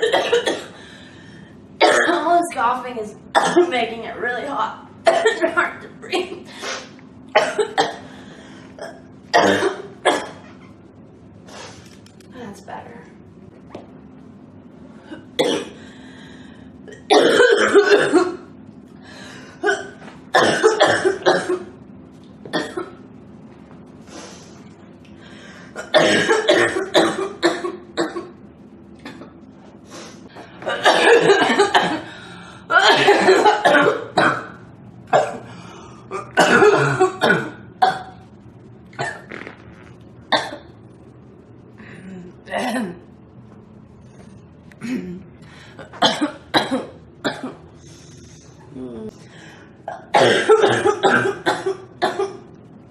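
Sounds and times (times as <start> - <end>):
girl coughing: 0.0 - 0.8, 1.8 - 2.4, 3.4 - 3.8, 5.1 - 6.4, 7.4 - 8.0, 8.8 - 10.4, 15.1 - 15.8, 16.9 - 18.5, 19.6 - 21.7, 22.6 - 23.0, 25.8 - 28.3, 30.7 - 32.1, 32.7 - 35.4, 36.1 - 38.2, 40.3 - 40.7, 42.5 - 43.0, 44.8 - 45.2, 45.8 - 47.6, 49.9 - 52.4.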